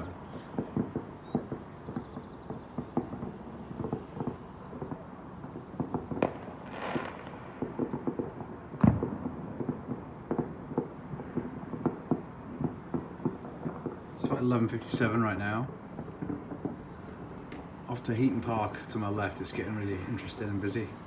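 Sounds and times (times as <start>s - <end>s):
distant fireworks bangs and pops: 0.0s - 21.0s
fireworks crackle: 0.0s - 21.0s
loud firework bang: 5.8s - 13.9s.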